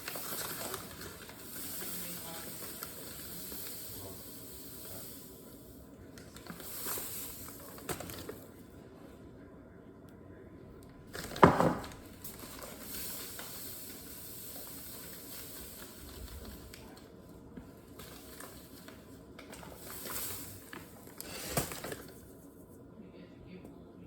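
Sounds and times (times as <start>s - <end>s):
sugar pouring into a cup: 0.0s - 8.5s, 11.2s - 17.0s, 17.8s - 22.2s.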